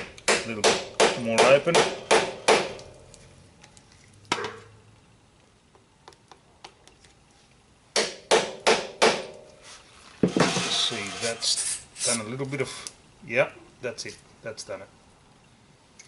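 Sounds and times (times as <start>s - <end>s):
hammer striking metal: 0.0s - 2.8s, 10.2s - 11.2s.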